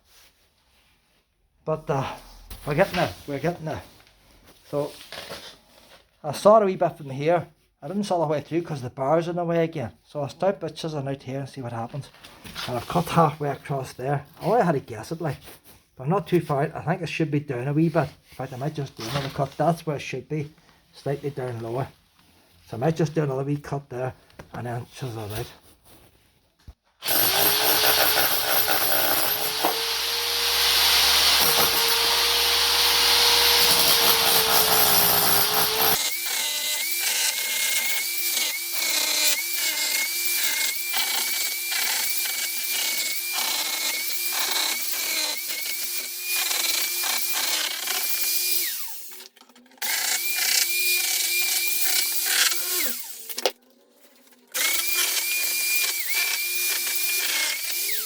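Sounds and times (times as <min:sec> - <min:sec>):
power tool with rapid knocks: 0:27.0 - 0:49.2
stone saw grinding: 0:27.0 - 0:53.6, 0:54.4 - 0:58.0.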